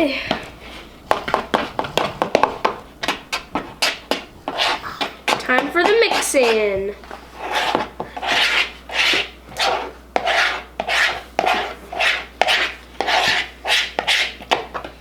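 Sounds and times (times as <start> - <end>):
utensil scraping slime in bowl: 3.1 - 14.4.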